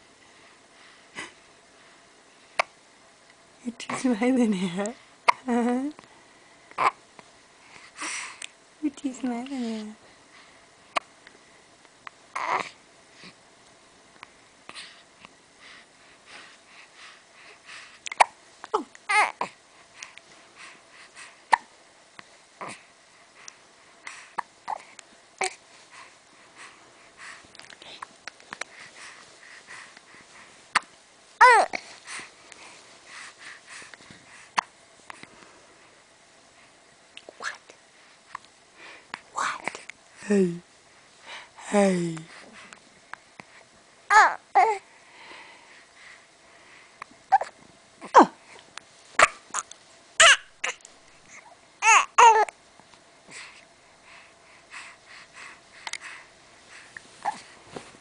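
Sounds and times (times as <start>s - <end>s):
baby breathing softly: 7.6s - 8.5s, 14.6s - 18.1s, 19.4s - 21.5s, 22.6s - 30.9s, 31.6s - 35.8s, 38.0s - 40.0s, 41.0s - 41.6s, 42.2s - 42.8s, 44.6s - 47.1s, 53.2s - 58.0s
baby babbling: 12.4s - 12.7s, 18.7s - 19.5s, 31.4s - 31.8s, 44.1s - 44.8s, 51.8s - 52.5s
baby hiccuping: 49.2s - 50.8s.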